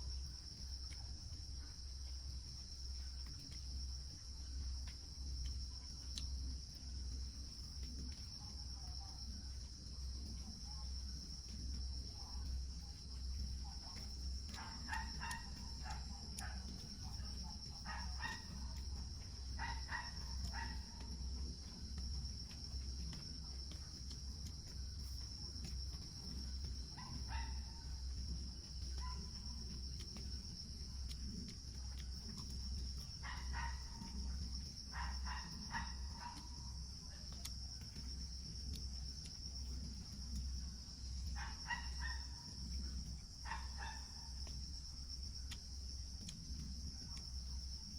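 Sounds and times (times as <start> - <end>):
insects trilling: 0.0 - 47.9.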